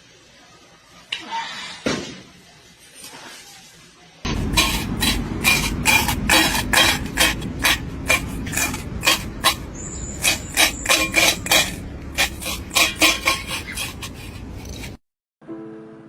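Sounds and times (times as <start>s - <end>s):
steady low rumble: 4.3s - 14.9s
rasping scraping strokes: 4.3s - 15.0s
high whistling tone: 9.6s - 11.0s.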